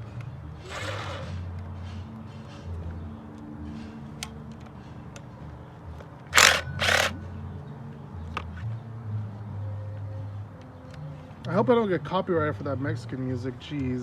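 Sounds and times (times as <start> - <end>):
faint background music: 0.0 - 14.0
impact wrench bursts: 0.6 - 1.4, 6.4 - 7.2.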